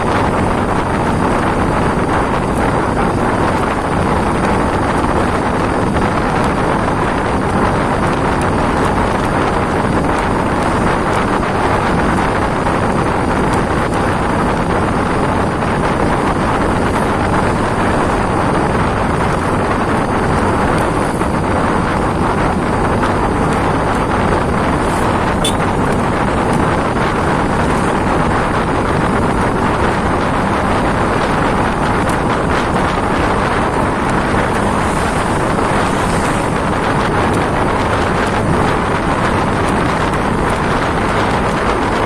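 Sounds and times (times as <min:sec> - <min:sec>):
heavy rain pouring: 0:20.5 - 0:42.0.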